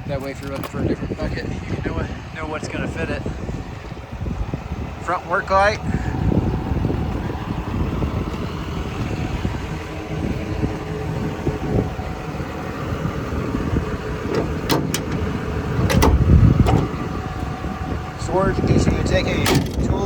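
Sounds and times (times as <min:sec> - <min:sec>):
sharp clicks and clunk: 0:00.1 - 0:00.8, 0:14.2 - 0:17.6, 0:19.4 - 0:20.0
excavator diesel engine idling: 0:09.1 - 0:20.0.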